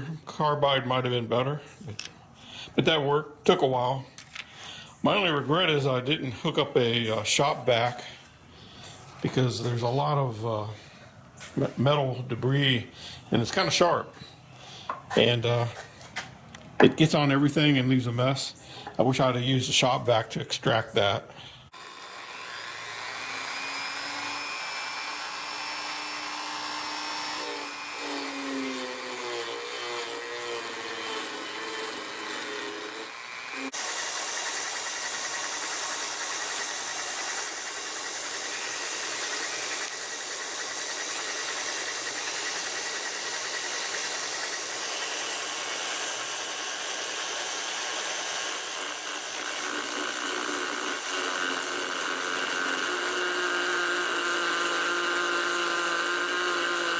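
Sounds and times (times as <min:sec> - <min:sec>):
power drill running: 0:21.7 - 0:56.9
rotary tool grinding metal: 0:21.7 - 0:56.9.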